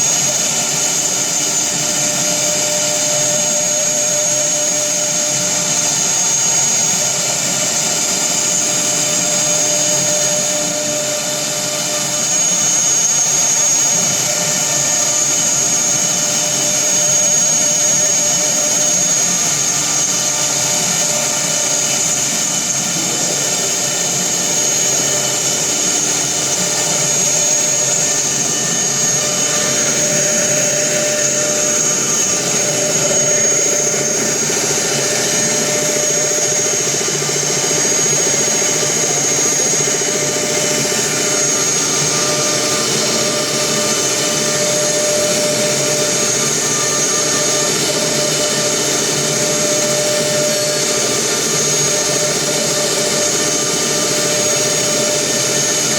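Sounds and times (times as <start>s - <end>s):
mechanical noise of router: 0.0s - 55.9s
spindle motor high whine: 0.0s - 55.9s.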